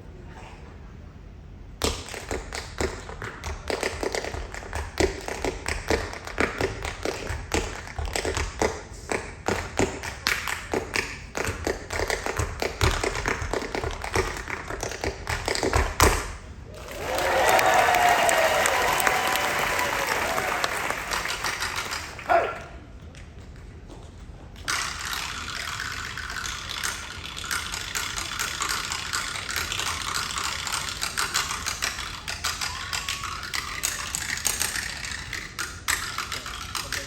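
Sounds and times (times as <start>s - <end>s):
tap shoes on stage floor: 1.8s - 16.4s
audience applause: 16.7s - 22.7s.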